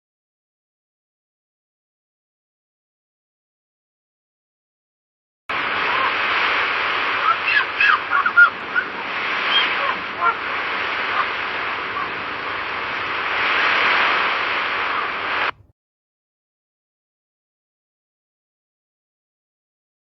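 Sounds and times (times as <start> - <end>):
sea waves washing on shore: 5.5 - 15.7
short bird calls: 6.9 - 15.5.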